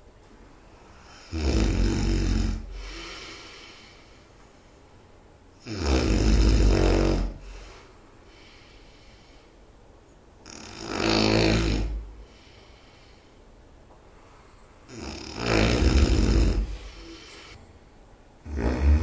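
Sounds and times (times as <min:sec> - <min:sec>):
person snoring loudly: 0:01.0 - 0:03.7, 0:05.6 - 0:07.4, 0:10.4 - 0:12.5, 0:14.9 - 0:17.6, 0:18.4 - 0:19.0.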